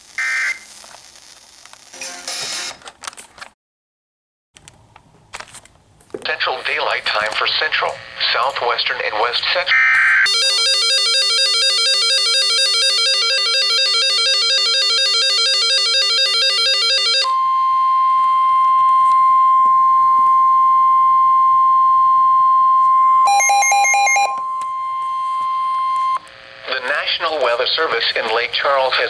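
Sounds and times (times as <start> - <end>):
steady high warning tone: 7.5 - 29.0
electronic alert beeps: 23.2 - 26.2.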